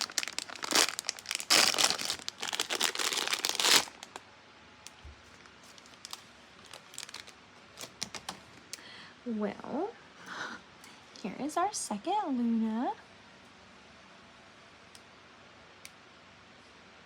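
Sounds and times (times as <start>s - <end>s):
packaging crinkling and tearing: 0.0s - 4.2s, 5.2s - 8.4s.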